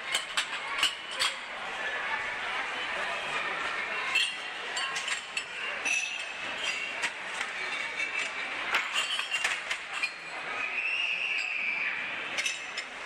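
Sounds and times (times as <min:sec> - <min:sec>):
background murmur: 0:00.0 - 0:13.0
plates and cutlery clinking: 0:00.1 - 0:01.5, 0:04.0 - 0:10.4, 0:12.3 - 0:13.0.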